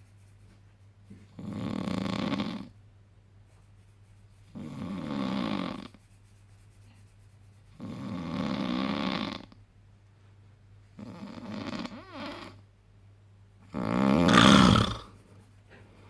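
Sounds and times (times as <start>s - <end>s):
man snoring: 13.8s - 15.1s.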